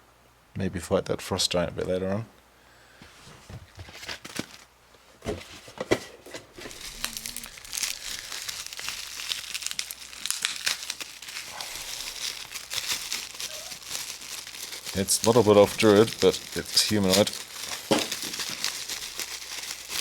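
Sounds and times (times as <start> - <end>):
plastic packaging crinkling: 3.8 - 4.7, 6.5 - 20.0.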